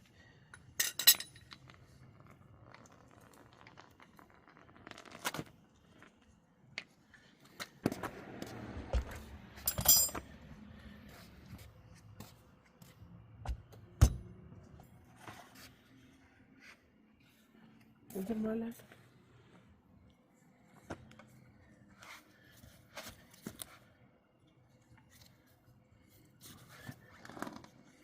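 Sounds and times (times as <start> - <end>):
tools clinking and scraping: 0.6 - 1.8, 9.6 - 10.4.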